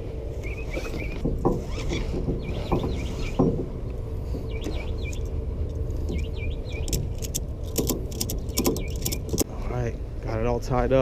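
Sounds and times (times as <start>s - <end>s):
low outdoor rumble: 0.0s - 11.0s
small bird chirping: 0.4s - 3.4s, 4.4s - 5.4s, 6.0s - 7.2s, 8.2s - 9.4s
dull knocks: 0.8s - 4.8s.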